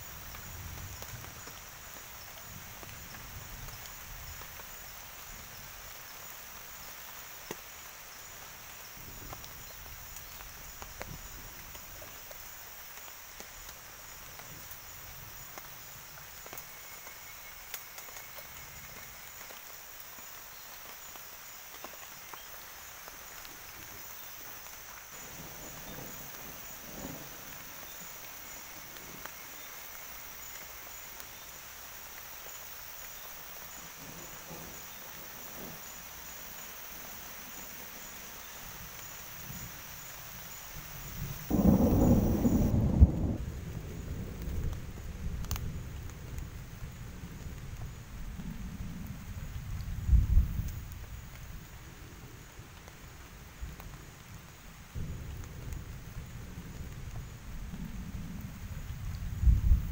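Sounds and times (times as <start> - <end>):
background hiss: 0.0 - 59.9
insect chorus: 0.0 - 59.9
rustle: 0.0 - 59.9
faint clicks: 45.4 - 45.6.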